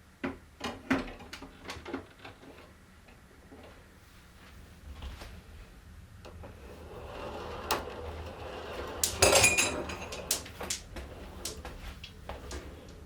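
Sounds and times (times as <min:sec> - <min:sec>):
marbles clattering on plastic run: 0:08.4 - 0:11.6.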